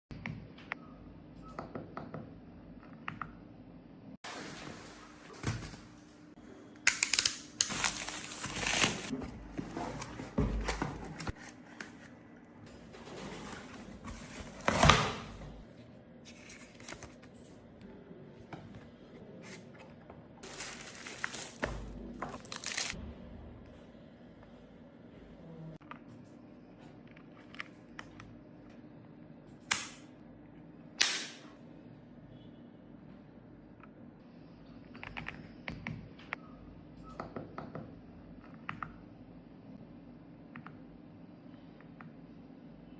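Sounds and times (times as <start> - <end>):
packaging crinkling and rustling: 6.9 - 9.2, 20.4 - 23.0.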